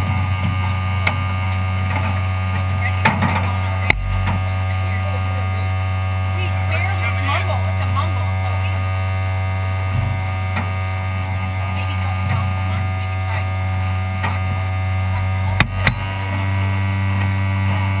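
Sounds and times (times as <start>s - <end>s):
steady low hum: 0.0s - 18.0s
sharp knocks: 3.9s - 4.4s.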